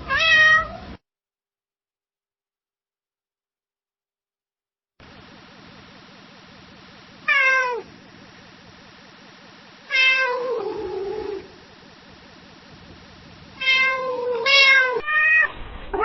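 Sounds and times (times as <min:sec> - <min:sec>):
cat meowing: 0:00.0 - 0:00.9, 0:07.3 - 0:07.9, 0:09.9 - 0:11.6, 0:13.6 - 0:16.0.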